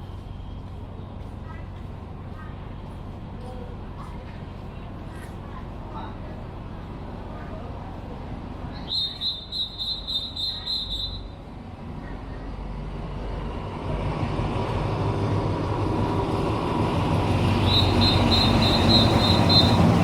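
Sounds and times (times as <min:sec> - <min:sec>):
train rumbling on tracks: 0:00.0 - 0:20.0
high-pitched chirps: 0:08.9 - 0:11.2, 0:17.6 - 0:20.0.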